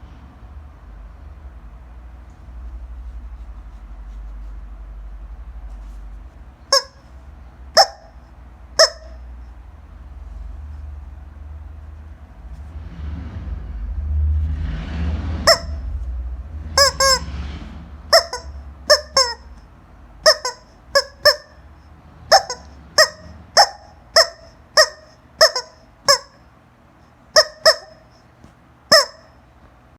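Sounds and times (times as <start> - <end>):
rustling handling noise: 2.0 - 7.6
rubber chicken toy squeaking: 6.6 - 8.2, 8.8 - 9.3, 15.4 - 15.8, 16.8 - 17.3, 18.1 - 21.6, 22.2 - 26.4, 27.3 - 28.3, 28.9 - 29.4.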